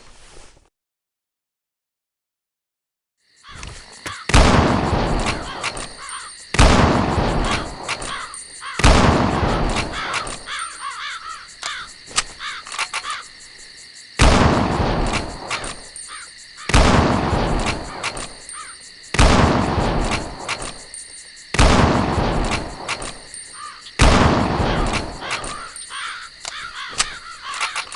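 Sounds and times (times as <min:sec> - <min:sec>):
rifle shots: 0:04.3 - 0:06.0, 0:06.6 - 0:10.5, 0:14.2 - 0:15.9, 0:16.7 - 0:18.4, 0:19.2 - 0:20.8, 0:21.6 - 0:23.3, 0:24.0 - 0:25.7
rolling gunshot echo: 0:06.6 - 0:08.2, 0:08.8 - 0:10.4, 0:16.7 - 0:18.3, 0:19.2 - 0:20.7, 0:21.6 - 0:23.2, 0:24.0 - 0:25.5.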